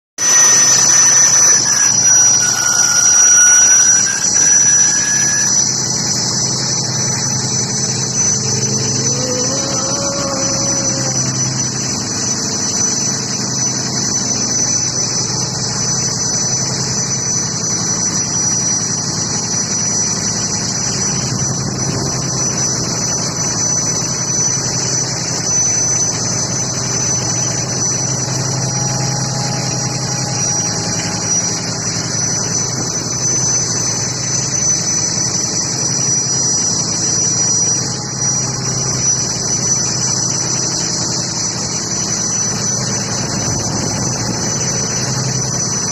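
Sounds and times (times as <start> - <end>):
loud high hiss: 0.2 - 12.2
boat engine humming: 0.2 - 14.6, 19.1 - 45.9
thin high whine: 0.2 - 45.9.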